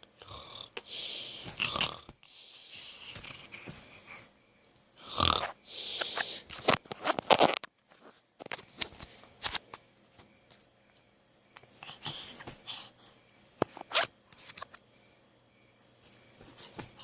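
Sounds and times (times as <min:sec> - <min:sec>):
loud snore: 0:00.2 - 0:00.8, 0:01.6 - 0:02.1, 0:05.0 - 0:05.6
raspy breaths: 0:00.6 - 0:04.4, 0:05.0 - 0:06.7, 0:11.7 - 0:13.3, 0:16.4 - 0:17.0.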